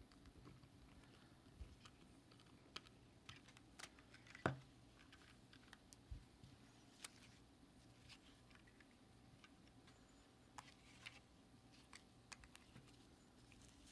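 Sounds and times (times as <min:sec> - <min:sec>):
small clicks and taps: 0:00.0 - 0:06.2, 0:11.8 - 0:13.0.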